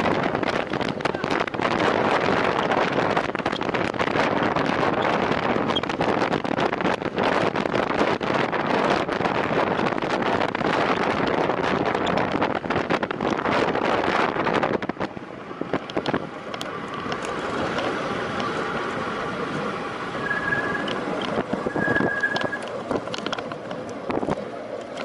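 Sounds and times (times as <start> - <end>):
bicycle tyre and drivetrain noise: 0.0 - 25.0
wind rushing over microphone: 0.0 - 25.0
short high beeps: 20.2 - 21.0, 21.6 - 22.7
clicks: 20.3 - 24.0.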